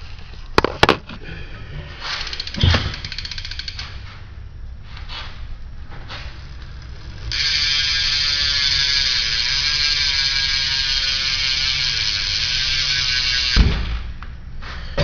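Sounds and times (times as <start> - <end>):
bicycle hub ratcheting buzz: 2.1 - 4.1, 6.2 - 14.2.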